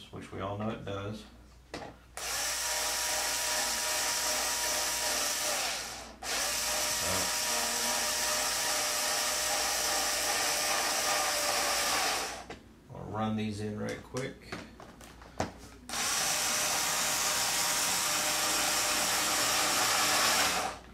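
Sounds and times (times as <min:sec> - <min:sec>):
cordless drill motor running: 0:02.2 - 0:12.5, 0:15.9 - 0:20.8.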